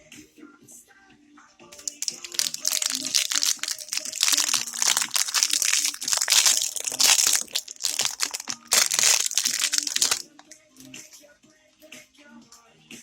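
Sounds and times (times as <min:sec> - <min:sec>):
plastic packaging crinkling: 0:01.8 - 0:10.5.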